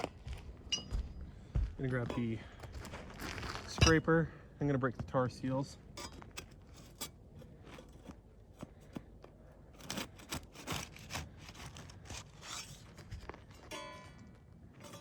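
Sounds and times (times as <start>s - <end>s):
metal scraper scraping shingles: 2.1s - 4.0s, 5.8s - 15.0s.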